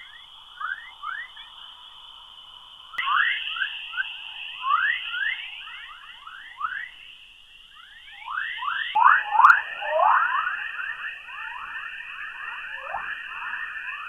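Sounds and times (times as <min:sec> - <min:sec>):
steady hiss: 0:00.0 - 0:14.0
short rising radio chirps: 0:03.0 - 0:14.0.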